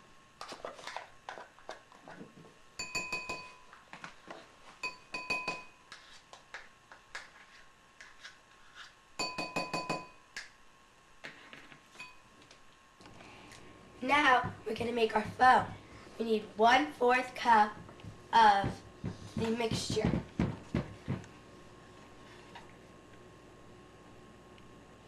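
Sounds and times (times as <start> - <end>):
utensil tapping glass bowl: 2.8 - 3.6, 9.2 - 10.2.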